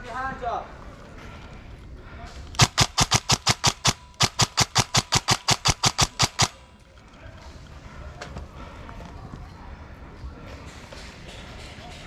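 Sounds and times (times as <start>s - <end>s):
airsoft gun rapid firing: 2.6s - 6.6s.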